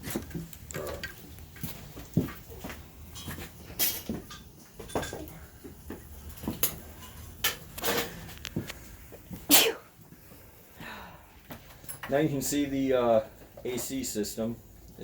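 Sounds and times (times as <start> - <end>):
tools and engine parts clattering: 0.0 - 8.4.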